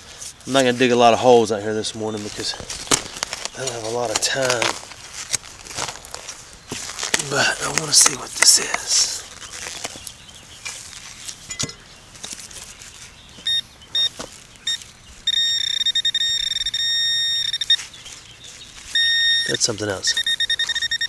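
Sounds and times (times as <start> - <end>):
metal detector short beeps: 13.4 - 17.8, 18.9 - 21.0
metal detector steady tone: 13.4 - 17.9, 18.8 - 21.0.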